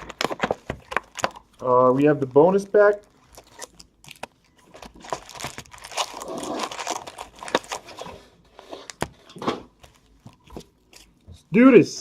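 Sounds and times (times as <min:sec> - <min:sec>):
plastic packaging crinkling and tearing: 0:00.0 - 0:09.1.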